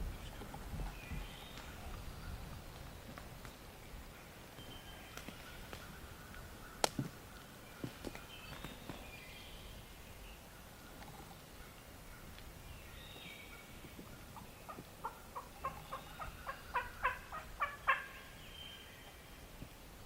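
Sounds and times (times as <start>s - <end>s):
faint bird calls: 0.0s - 20.0s
wild turkey yelping: 13.5s - 19.2s.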